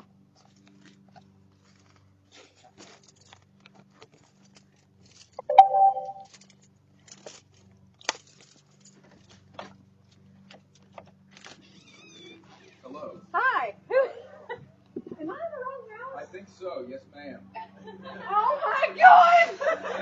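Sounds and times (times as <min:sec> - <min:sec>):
doorbell chime click and tone: 0:05.4 - 0:06.2.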